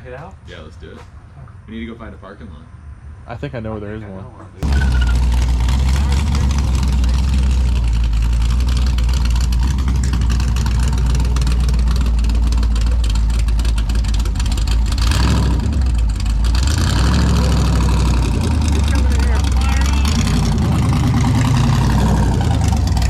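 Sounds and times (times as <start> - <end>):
car engine idling: 4.6 - 23.0.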